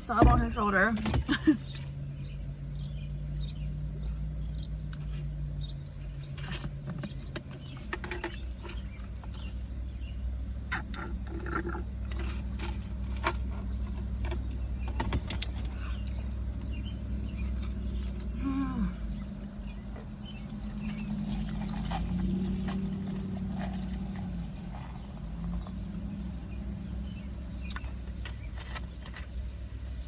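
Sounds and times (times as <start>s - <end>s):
steady low hum: 0.0s - 30.0s
utensil scraping food container: 5.0s - 9.6s, 10.7s - 18.4s, 19.1s - 29.5s
chewing: 15.4s - 26.2s.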